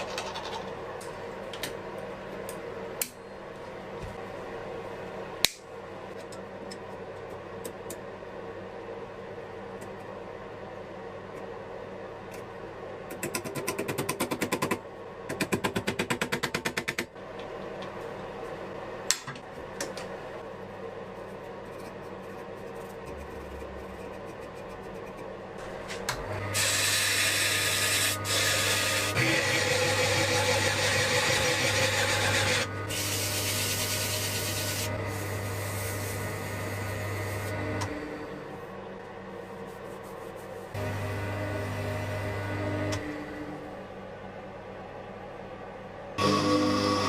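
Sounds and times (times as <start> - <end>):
power tool grinding: 26.4 - 37.6, 46.2 - 47.0.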